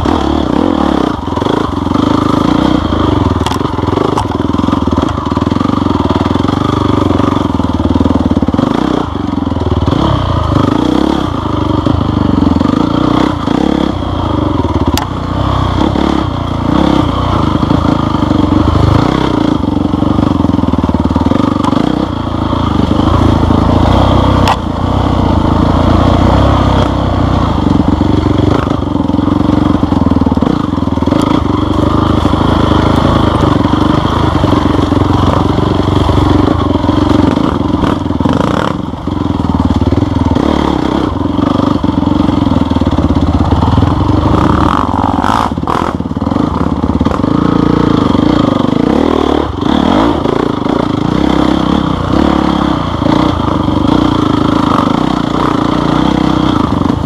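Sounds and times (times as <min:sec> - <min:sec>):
off-road vehicle engine: 0:00.0 - 0:57.0
sharp clacks: 0:24.4 - 0:24.7.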